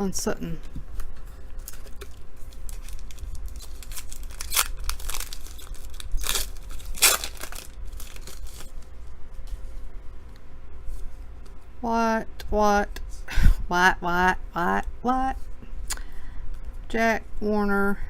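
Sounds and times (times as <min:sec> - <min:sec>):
foil wrapper tearing and crinkling: 0:01.6 - 0:08.8.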